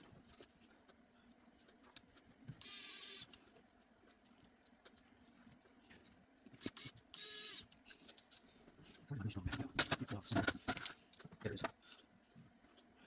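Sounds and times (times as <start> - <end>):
electric screwdriver motor whir: 2.6 - 3.3, 6.6 - 7.7.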